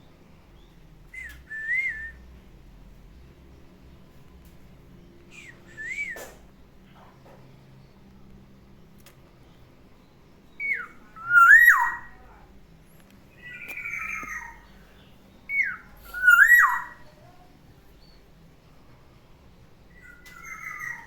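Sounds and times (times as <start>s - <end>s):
bird fluty whistled song: 0.6s - 2.4s, 5.0s - 6.6s, 10.4s - 12.4s, 13.3s - 17.4s, 19.9s - 21.0s.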